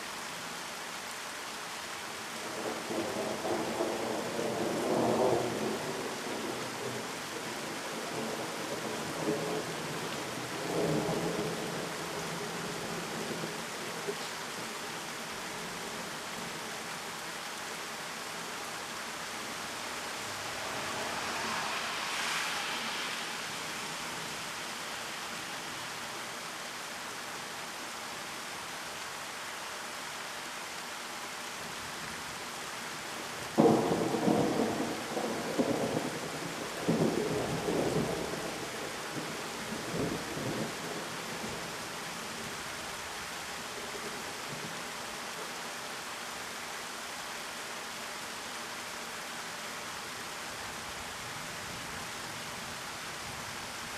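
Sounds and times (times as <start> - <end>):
heavy rain pouring: 0.0 - 53.9
thunder cracking and rolling: 33.6 - 41.5.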